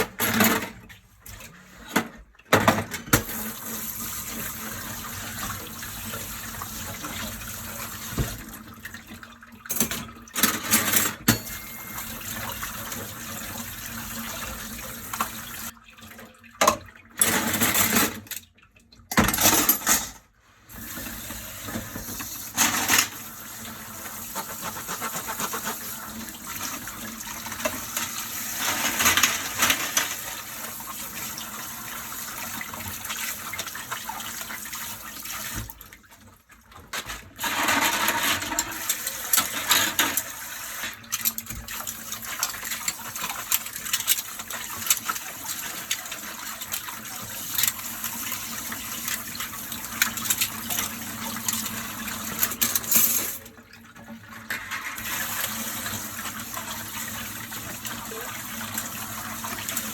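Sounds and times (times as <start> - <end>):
dishes clinking and clattering: 0.0 - 3.4, 9.6 - 13.1, 16.6 - 18.5, 19.1 - 20.2, 21.7 - 23.4, 26.5 - 30.4, 36.8 - 55.5
tap water running: 0.0 - 20.0, 20.7 - 59.9.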